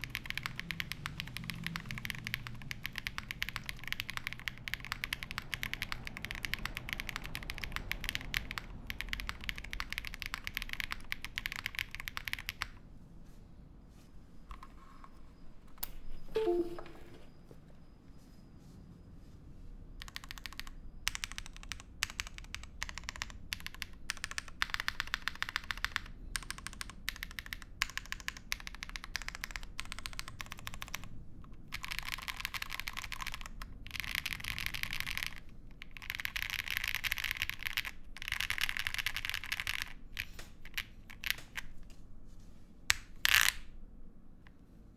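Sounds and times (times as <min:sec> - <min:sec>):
mechanical keyboard typing: 0:00.0 - 0:12.8, 0:20.0 - 0:41.8, 0:42.9 - 0:43.6.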